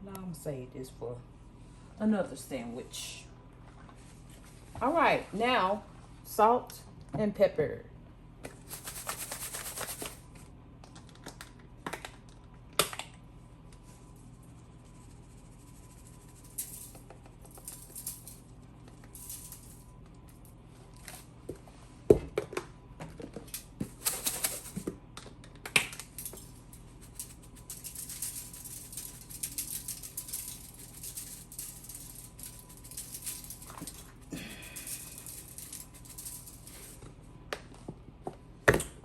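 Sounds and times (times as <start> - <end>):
shaker clicks and knocks: 8.5 - 10.2, 14.2 - 19.8, 23.2 - 37.1
fine rapid rattle: 26.3 - 36.9.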